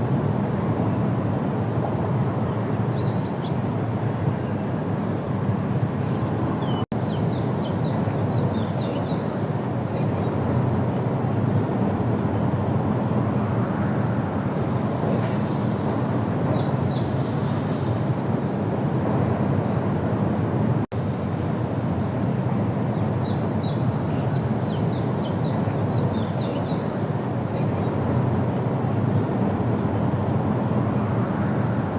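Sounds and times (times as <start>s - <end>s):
steady low rumble: 0.0s - 31.9s
small bird chirping: 6.2s - 10.3s.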